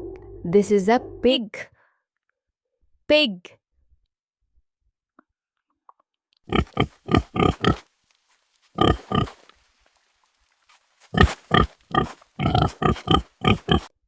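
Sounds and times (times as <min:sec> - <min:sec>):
pig grunting and oinking: 0:06.5 - 0:07.8, 0:08.8 - 0:09.4, 0:11.1 - 0:14.0.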